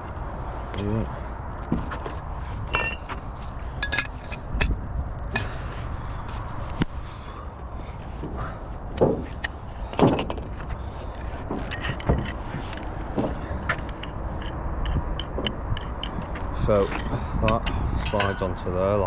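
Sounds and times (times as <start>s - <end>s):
steady low rumble: 0.0s - 19.0s
steel clamp parts clinking: 2.6s - 5.6s, 9.2s - 18.7s.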